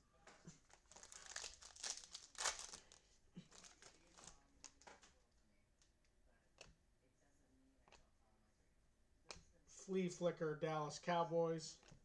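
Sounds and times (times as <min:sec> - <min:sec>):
foil wrapper tearing: 0:00.6 - 0:04.8.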